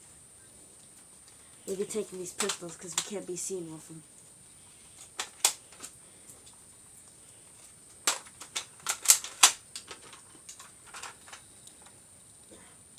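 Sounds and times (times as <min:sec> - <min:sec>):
toy pistols clicking: 0:02.2 - 0:03.2, 0:05.0 - 0:06.0, 0:08.0 - 0:11.4.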